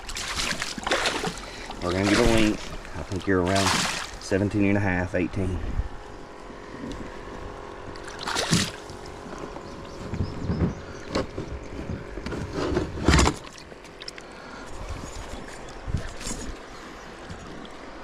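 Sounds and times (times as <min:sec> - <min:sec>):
water rushing: 0:00.0 - 0:05.2, 0:08.0 - 0:09.2
knocks and thuds against kayak: 0:10.0 - 0:13.5.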